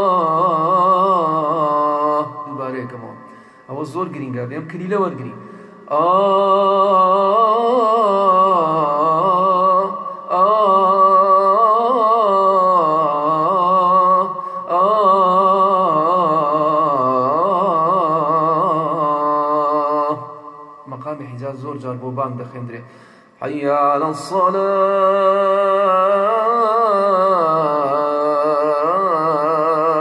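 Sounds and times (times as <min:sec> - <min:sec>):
man chanting: 0:00.0 - 0:30.0
man breathing: 0:03.2 - 0:03.7, 0:05.4 - 0:05.9, 0:10.0 - 0:10.3, 0:14.3 - 0:14.7, 0:22.8 - 0:23.4.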